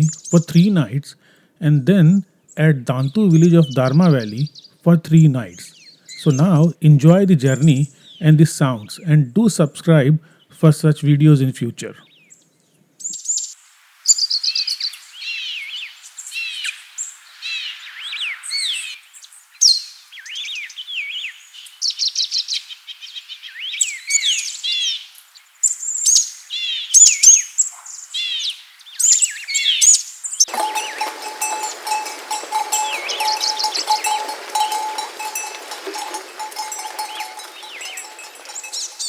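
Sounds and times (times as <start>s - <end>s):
songbirds chirping and trilling: 2.0s - 9.1s, 30.5s - 39.0s
bells ringing: 30.5s - 39.0s.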